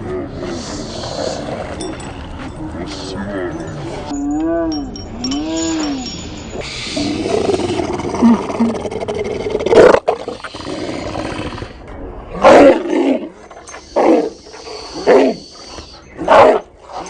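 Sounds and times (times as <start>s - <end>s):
dogs growling and snarling: 0.0s - 2.2s, 7.0s - 17.0s.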